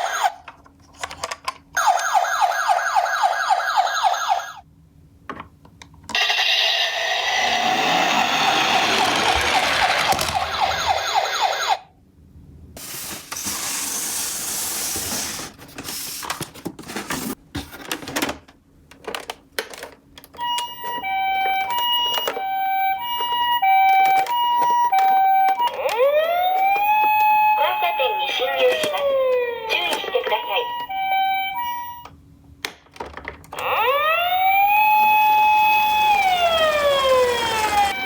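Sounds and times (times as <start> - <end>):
two-tone electronic siren: 0.0 - 0.4, 1.8 - 4.6, 6.2 - 12.0, 20.4 - 32.1, 33.6 - 38.0
electronic siren warbling: 1.8 - 4.6, 6.2 - 11.9, 33.6 - 38.0.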